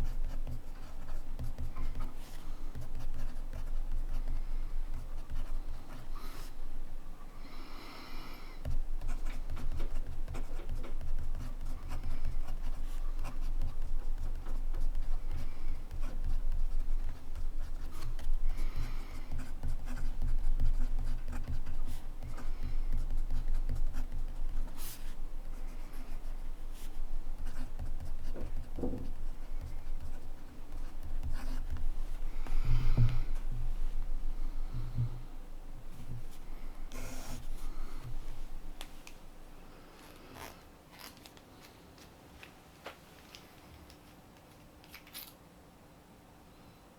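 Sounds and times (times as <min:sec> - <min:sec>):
pen nib scratching on paper: 0:00.0 - 0:06.6, 0:08.6 - 0:33.5.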